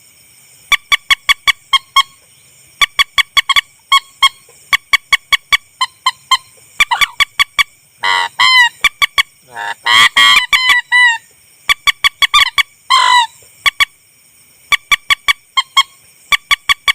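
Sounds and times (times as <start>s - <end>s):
bird honking calls: 5.8s - 7.4s, 8.0s - 11.3s, 12.3s - 13.4s
bird short sharp nasal notes: 6.3s - 7.2s, 9.5s - 10.4s.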